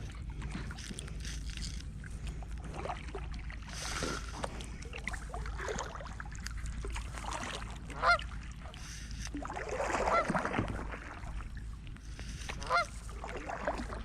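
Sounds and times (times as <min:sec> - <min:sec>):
background noise on water: 0:00.0 - 0:14.0
goose honking: 0:07.9 - 0:08.3, 0:12.5 - 0:13.1.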